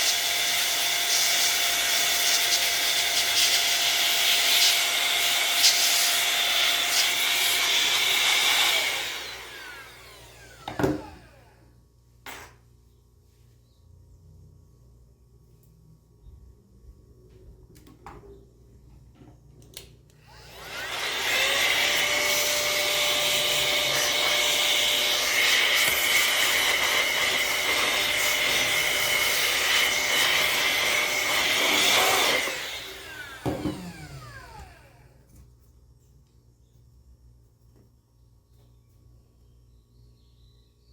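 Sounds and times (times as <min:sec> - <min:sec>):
electric air blower whining: 0:00.0 - 0:11.8, 0:20.1 - 0:35.3.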